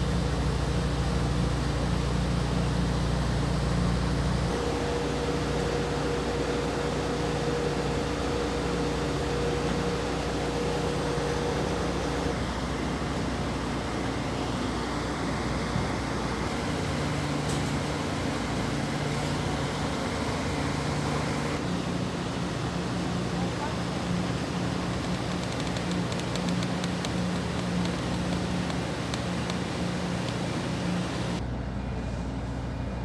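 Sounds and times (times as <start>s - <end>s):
higher machine tone: 0.0s - 21.6s
machine droning hum: 0.0s - 33.0s.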